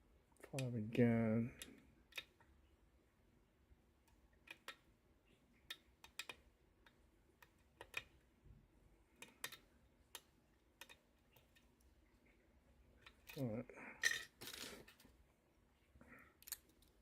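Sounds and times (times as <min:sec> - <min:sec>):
lock pick clicking on pins: 0:04.1 - 0:04.8, 0:05.7 - 0:08.2, 0:09.2 - 0:11.7, 0:16.4 - 0:17.0.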